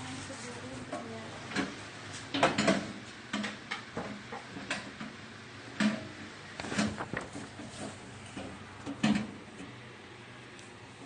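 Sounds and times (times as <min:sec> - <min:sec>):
microwave oven knocks and clicks: 0:01.5 - 0:05.2, 0:08.4 - 0:09.4.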